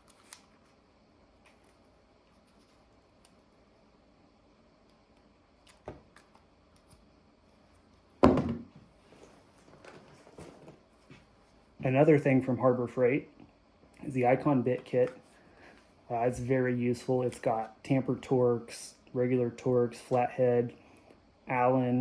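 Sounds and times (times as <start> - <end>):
knock: 8.2 - 8.7
object set down with a thunk: 8.2 - 8.7.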